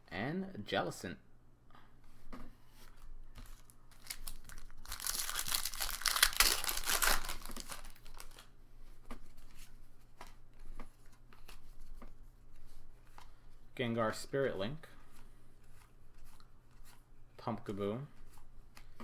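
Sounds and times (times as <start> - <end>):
foil wrapper tearing and crinkling: 3.5 - 8.5.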